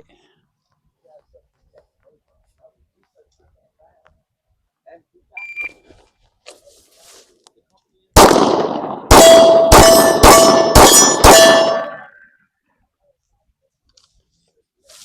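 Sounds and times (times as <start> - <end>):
gunshots: 8.2 - 12.1
steel targets ringing: 9.1 - 12.2.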